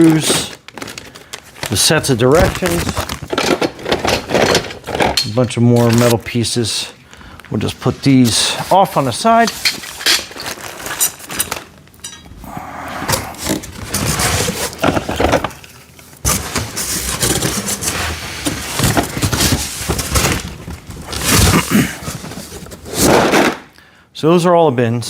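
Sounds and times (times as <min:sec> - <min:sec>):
metal and plastic clattering: 0:02.3 - 0:05.3, 0:13.8 - 0:23.6.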